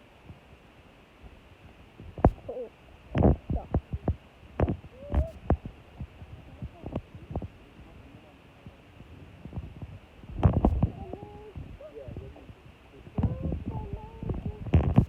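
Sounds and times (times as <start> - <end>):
knocks and thumps: 10.3 - 11.0.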